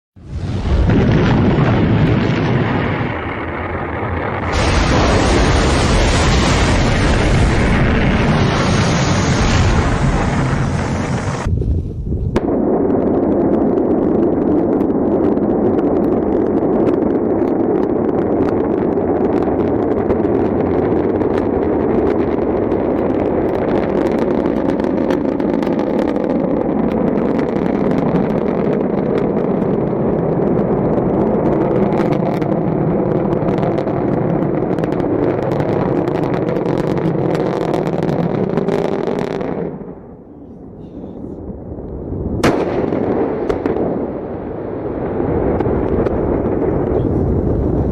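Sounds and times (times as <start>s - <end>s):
rocket exhaust rumble: 0.2s - 47.9s.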